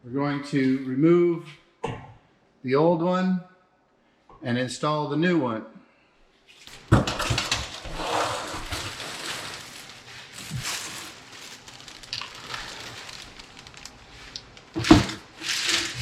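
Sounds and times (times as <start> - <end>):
objects rustling and crackling: 6.4 - 16.0.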